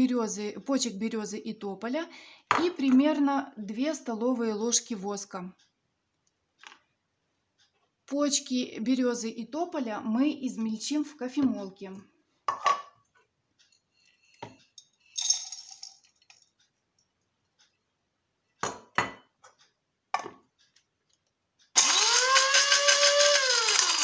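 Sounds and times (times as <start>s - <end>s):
electric coffee grinder running: 21.8s - 24.0s.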